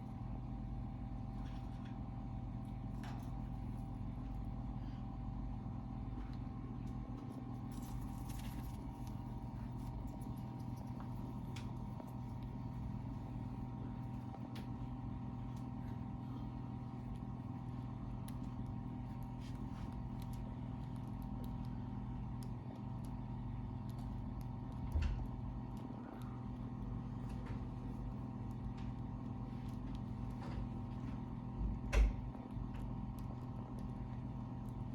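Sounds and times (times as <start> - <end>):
steady machine hum: 0.0 - 34.9.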